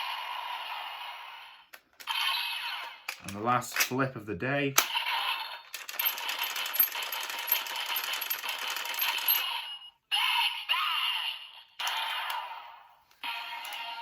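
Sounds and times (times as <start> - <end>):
toy electronic sound effects and music: 9.0 - 14.0.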